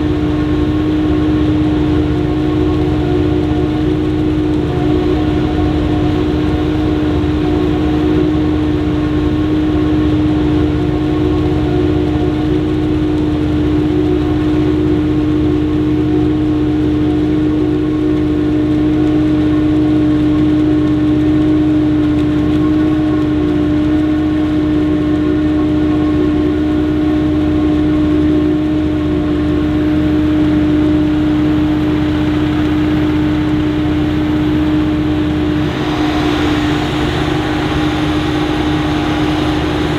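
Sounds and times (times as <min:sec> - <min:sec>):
forage harvester machine drone: 0:29.6 - 0:39.9
machine whine: 0:30.4 - 0:39.9
low engine rumble: 0:31.0 - 0:39.9.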